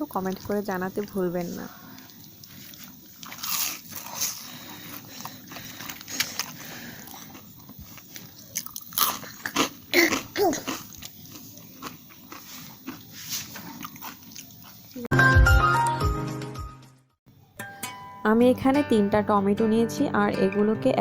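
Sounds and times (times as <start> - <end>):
crunchy food being chewed: 1.8 - 15.1.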